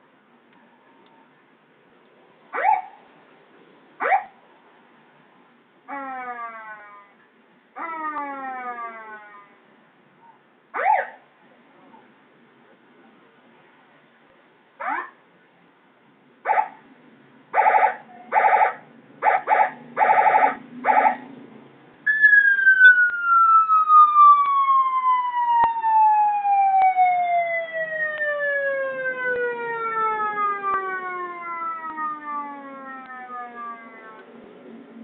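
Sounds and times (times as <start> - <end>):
electronic vehicle siren: 2.5 - 3.0, 4.0 - 4.4, 7.8 - 9.5, 10.8 - 11.2, 14.8 - 15.2, 16.5 - 16.8, 17.6 - 21.4, 22.0 - 34.2.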